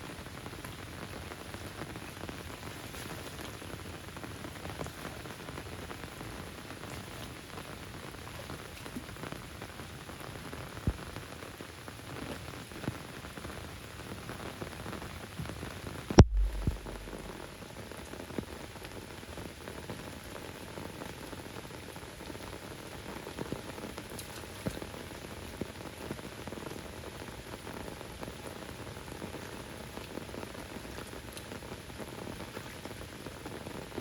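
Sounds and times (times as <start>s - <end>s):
steady rain falling: 0.0s - 34.0s
drops striking close by: 16.2s - 17.4s
loud low thump: 16.2s - 17.5s.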